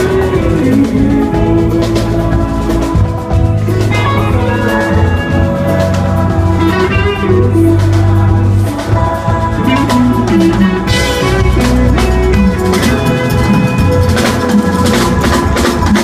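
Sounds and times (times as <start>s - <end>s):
bass notes: 0.0s - 16.0s
drum kit: 0.0s - 16.0s
guitar bending notes: 0.0s - 16.0s.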